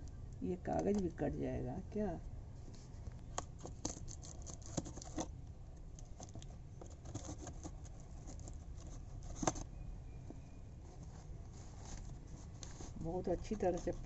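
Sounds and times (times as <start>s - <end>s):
paper packaging rustling: 2.9s - 9.7s, 10.8s - 14.0s.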